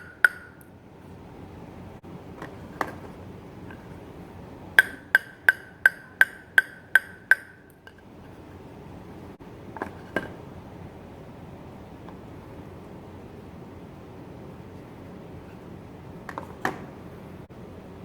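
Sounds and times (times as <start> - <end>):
table tennis ball bouncing on racket: 0.0 - 0.7, 4.8 - 7.9.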